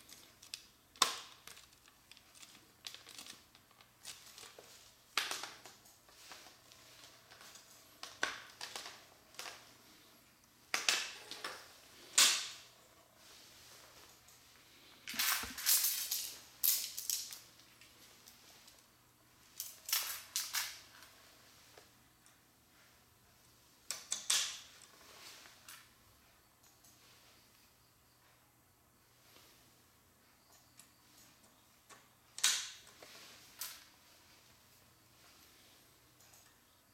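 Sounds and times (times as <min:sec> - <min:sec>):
plastic pieces clicking and clattering: 0:00.0 - 0:05.8, 0:07.3 - 0:09.6, 0:15.0 - 0:18.4, 0:19.6 - 0:20.8.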